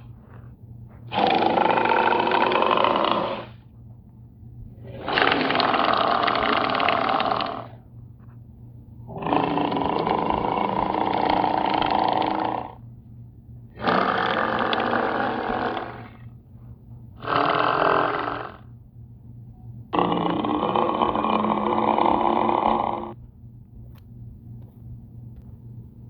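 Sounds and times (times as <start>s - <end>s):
monster roars: 1.1s - 3.6s, 4.8s - 7.8s, 9.1s - 12.8s, 13.8s - 16.2s, 17.2s - 18.6s, 20.0s - 23.2s.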